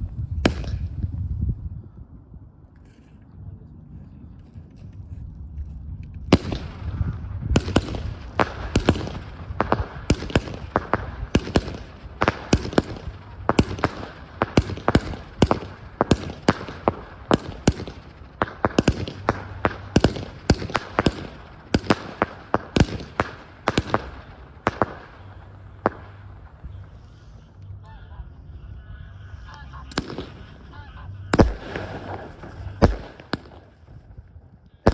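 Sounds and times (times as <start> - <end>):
fireworks bangs: 0.4 - 1.2, 6.3 - 27.4, 29.9 - 34.3.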